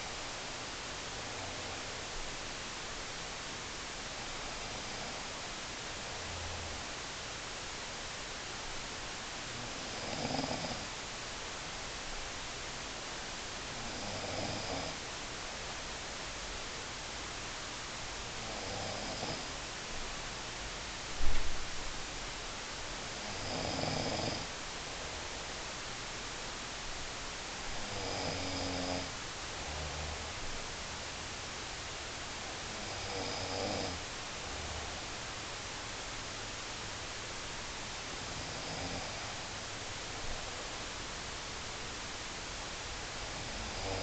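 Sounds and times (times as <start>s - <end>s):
steady background hiss: 0.0s - 44.0s
person snoring: 4.6s - 5.4s, 9.6s - 10.9s, 13.8s - 15.0s, 18.4s - 19.6s, 23.2s - 24.5s, 27.8s - 30.5s, 32.6s - 35.1s, 38.2s - 39.5s, 43.2s - 44.0s.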